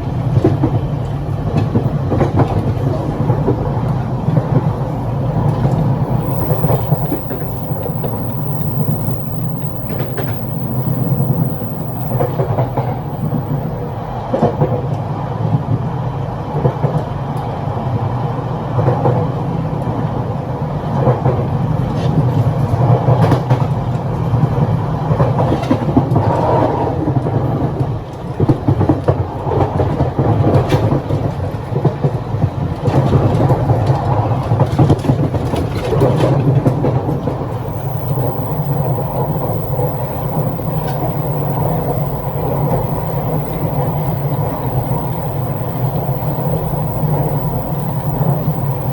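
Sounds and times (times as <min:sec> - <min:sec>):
train low rumble: 0:00.0 - 0:17.8, 0:36.4 - 0:48.9.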